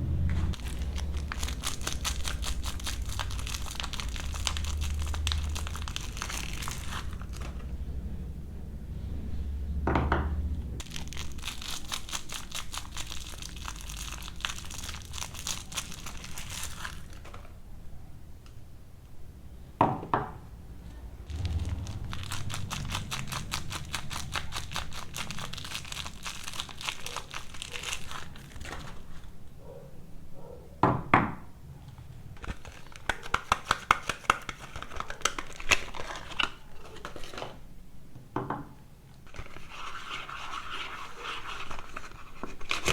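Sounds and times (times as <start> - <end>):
wrappers crinkling: 0.4 - 7.8, 10.8 - 17.6, 21.2 - 29.4, 32.4 - 37.5
sharp ripping of wrapper: 0.5 - 7.7, 10.8 - 17.5, 21.3 - 29.4, 32.4 - 37.6, 39.3 - 42.9.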